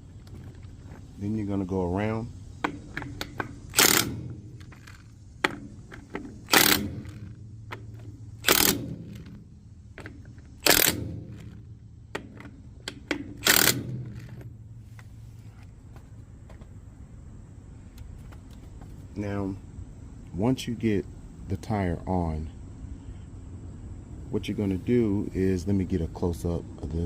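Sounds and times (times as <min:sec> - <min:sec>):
handling clicks: 0:02.6 - 0:09.4
impact wrench bursts: 0:02.6 - 0:14.6.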